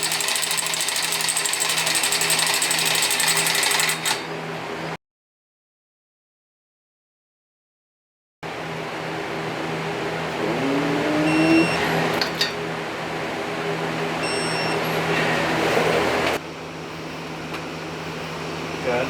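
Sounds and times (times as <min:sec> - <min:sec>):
steady mechanical hum: 0:00.0 - 0:05.0, 0:08.4 - 0:19.0
short rising squeak: 0:10.6 - 0:12.2
brief high-pitched squeals: 0:11.1 - 0:12.0.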